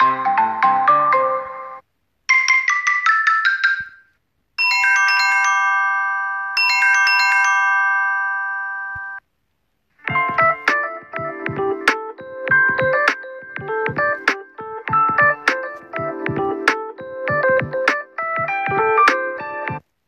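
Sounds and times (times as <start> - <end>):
phone ringtone melody: 0.0 - 9.2, 10.0 - 19.8
high bell-like notes: 4.6 - 9.2.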